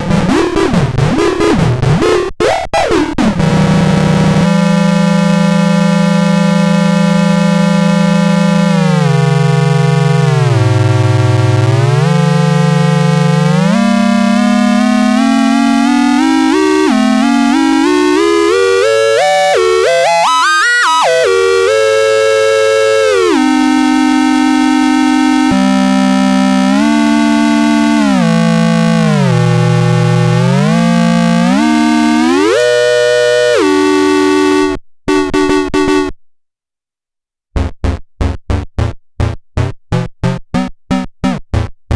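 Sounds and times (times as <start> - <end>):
buzzy synthesizer tone sliding: 11.2 - 36.1.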